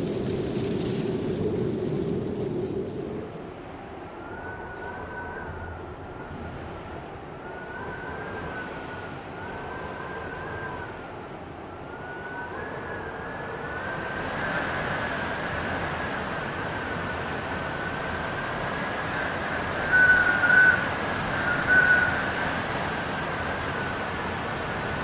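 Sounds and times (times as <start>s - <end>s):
wind rushing: 0.0s - 3.6s
wavering wind whistle: 0.0s - 14.9s, 17.0s - 24.4s.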